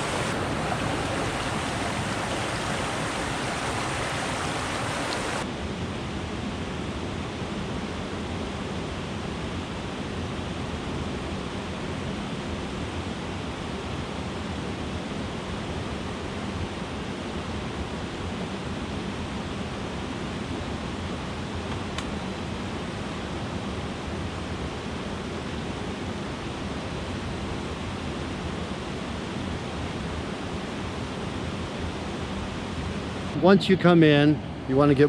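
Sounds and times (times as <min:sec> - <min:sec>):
waterfall rushing: 0:00.0 - 0:05.4.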